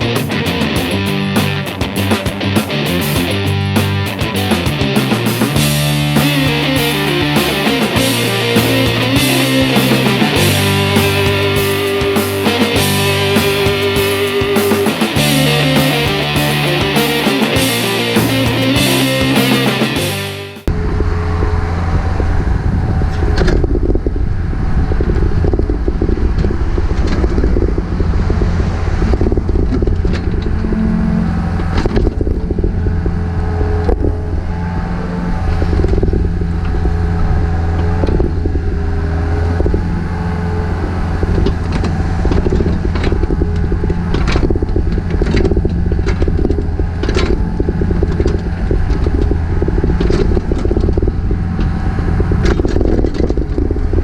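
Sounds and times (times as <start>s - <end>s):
excavator diesel engine running: 0.0s - 54.0s
excavator clanks and scrapes: 26.3s - 54.0s.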